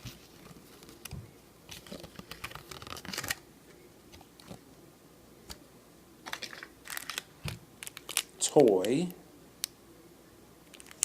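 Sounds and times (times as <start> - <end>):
packaging rustling and crinkling: 0.0 - 3.4, 6.3 - 9.0.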